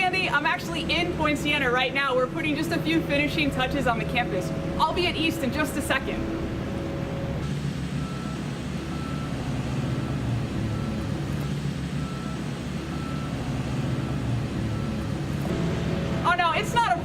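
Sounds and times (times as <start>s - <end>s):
heavy vehicle engine rumbling: 0.0s - 17.0s
reversing alarm beeps: 6.2s - 15.5s.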